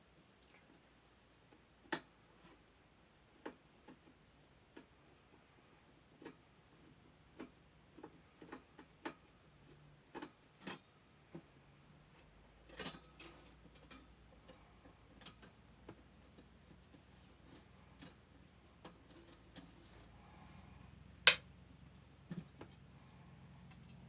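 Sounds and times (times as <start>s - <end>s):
small clicks and taps of tools: 23.7s - 24.0s.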